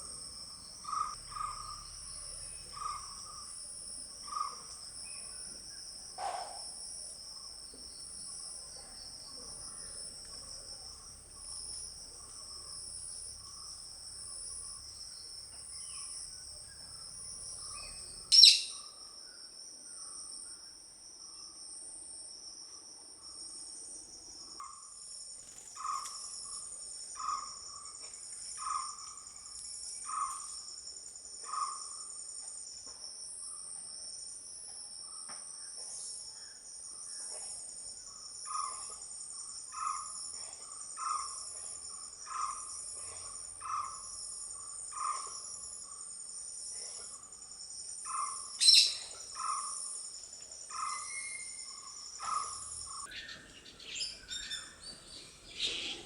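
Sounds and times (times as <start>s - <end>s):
crickets chirring: 0.0s - 56.0s
bird single-note call: 17.8s - 18.8s.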